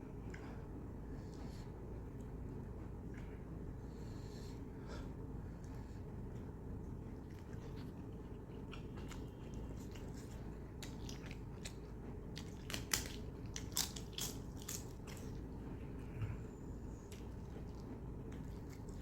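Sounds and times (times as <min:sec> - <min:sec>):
steady low hum: 0:00.0 - 0:19.0
person chewing food: 0:05.6 - 0:19.0
wet clicks and crunches: 0:12.4 - 0:15.3.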